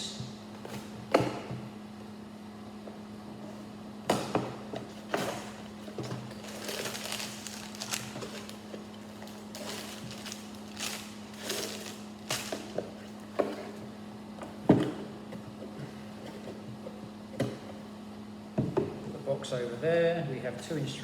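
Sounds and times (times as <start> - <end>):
cardboard and paper rustling: 5.0 - 13.7.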